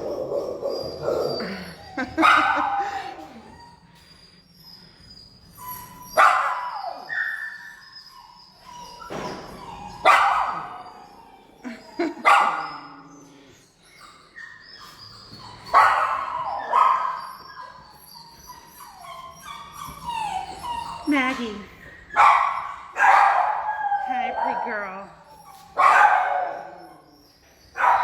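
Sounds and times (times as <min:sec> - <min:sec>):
dogs barking with echo: 0:25.8 - 0:26.8.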